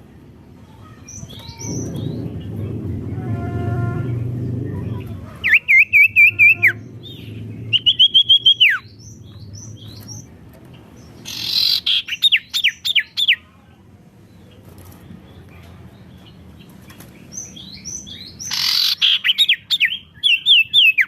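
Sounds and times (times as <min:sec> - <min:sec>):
low rumble: 0:01.4 - 0:05.4, 0:06.2 - 0:11.2.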